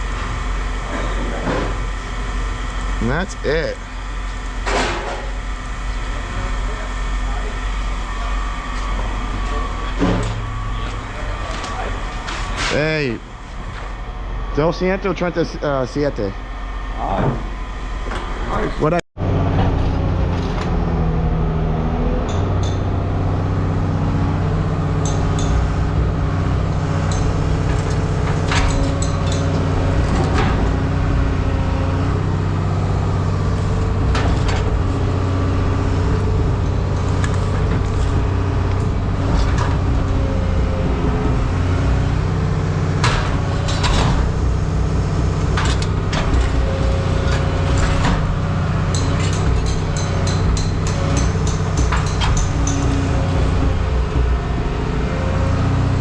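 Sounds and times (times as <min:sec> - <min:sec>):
engine running steadily: 0:00.0 - 0:56.0
metal clanks and rattles: 0:27.0 - 0:31.0, 0:43.0 - 0:44.7, 0:45.3 - 0:54.5.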